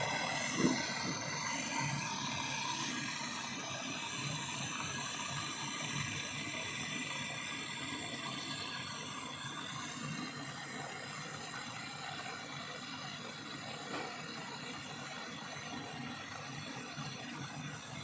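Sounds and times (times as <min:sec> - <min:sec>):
torch flame hissing: 0:00.0 - 0:12.4.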